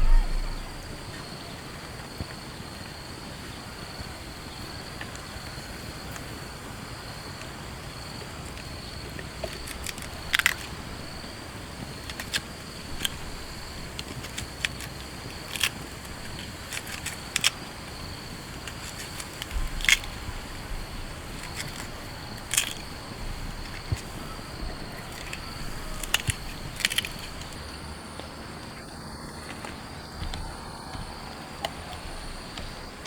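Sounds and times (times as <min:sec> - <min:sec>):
high-pitched whine: 0:00.0 - 0:01.0
outdoor hiss: 0:00.0 - 0:33.0.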